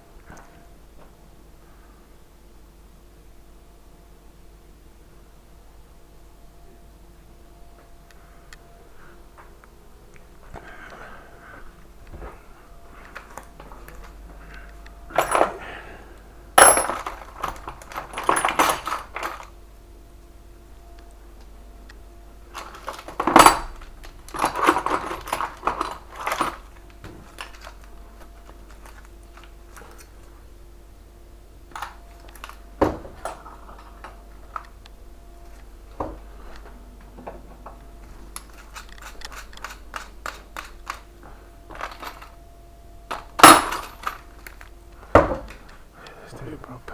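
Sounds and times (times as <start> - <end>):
metal tools clinking and clattering: 15.1 - 15.7, 16.6 - 19.5, 22.6 - 26.7, 37.2 - 41.1, 41.7 - 42.4, 43.1 - 44.6
lock hardware clicks: 16.6 - 19.5, 37.3 - 41.1.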